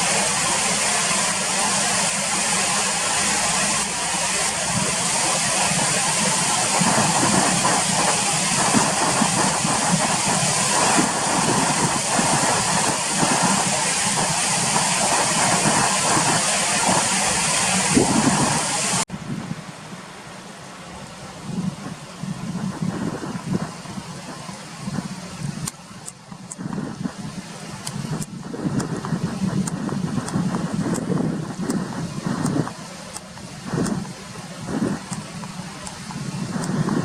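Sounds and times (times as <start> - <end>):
river water rushing: 0.0 - 37.0.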